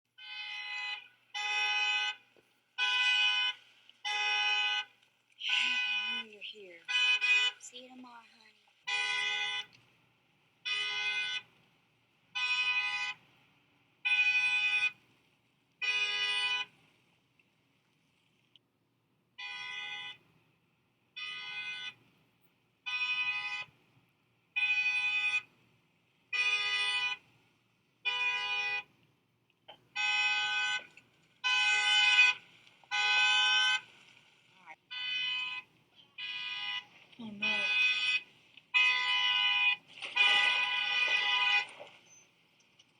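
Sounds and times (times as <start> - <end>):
car horn blasts: 0.2 - 7.8, 8.9 - 9.7, 10.7 - 11.5, 12.4 - 13.2, 15.8 - 16.7, 22.9 - 23.7, 26.4 - 27.2, 28.0 - 28.9, 29.7 - 34.0, 34.9 - 42.0.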